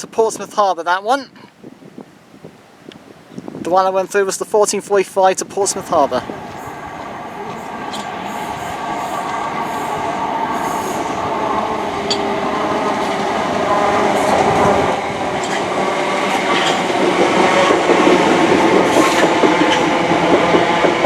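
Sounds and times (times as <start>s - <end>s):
train running on tracks: 5.5s - 21.0s
wheels clicking: 5.7s - 21.0s.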